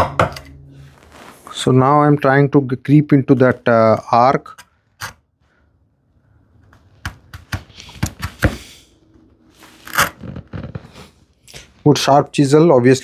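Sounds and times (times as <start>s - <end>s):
chisel paring wood: 7.0s - 8.6s.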